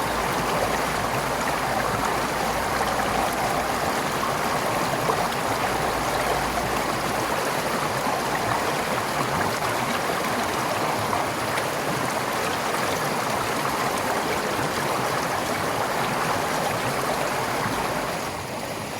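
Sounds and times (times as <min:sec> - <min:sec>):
stream flowing over rocks: 0:00.0 - 0:18.9.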